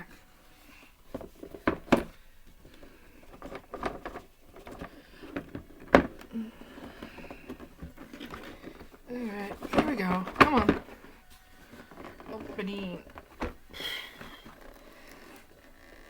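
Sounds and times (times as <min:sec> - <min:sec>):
cardboard box scraping: 0:00.2 - 0:16.0.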